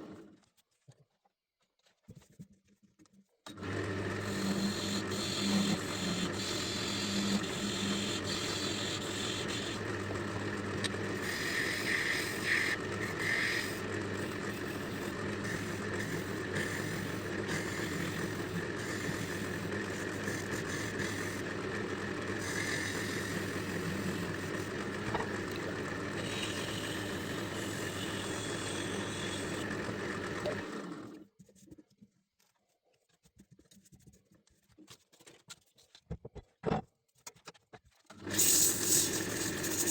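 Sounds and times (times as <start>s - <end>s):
lathe motor humming: 3.5s - 31.2s
turning tool scraping wood: 4.0s - 30.8s, 38.1s - 39.9s.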